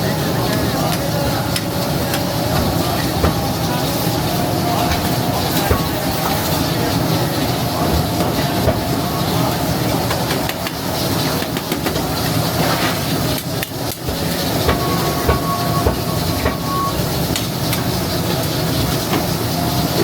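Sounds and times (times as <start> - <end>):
steady high tone: 0.0 - 11.4, 14.4 - 17.3, 19.5 - 20.0
kitchen roar: 0.0 - 20.0.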